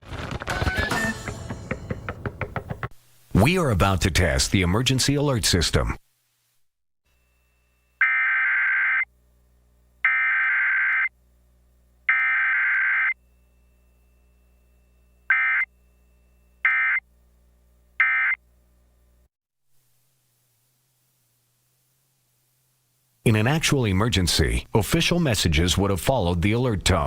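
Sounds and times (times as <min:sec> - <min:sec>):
harsh buzzing data bursts: 0:10.0 - 0:11.1, 0:12.1 - 0:13.2.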